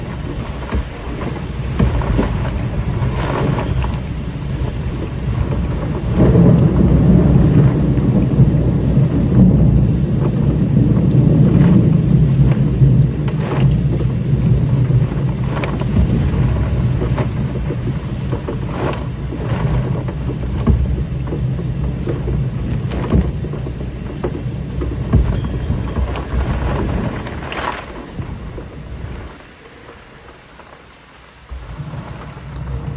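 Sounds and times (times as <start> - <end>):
sharp thunder cracks: 0.0 - 29.3
rolling thunder: 0.0 - 29.7, 31.4 - 32.9
steady rain: 0.0 - 32.9.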